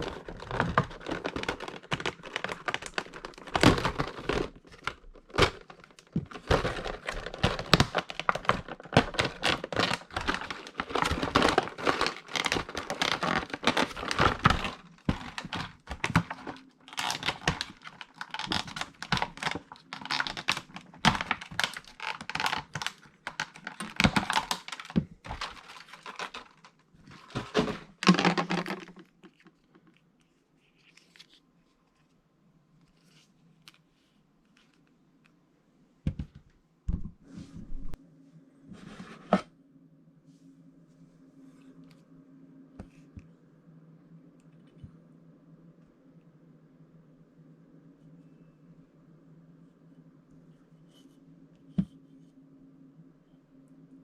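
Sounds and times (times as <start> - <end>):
plastic packaging crinkling and tearing: 0.0 - 30.0.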